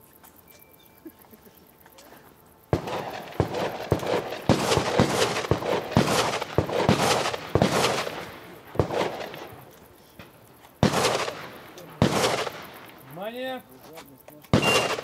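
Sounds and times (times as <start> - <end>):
shotgun shots with ringing echo: 2.7 - 9.7, 10.8 - 13.0, 14.5 - 15.0.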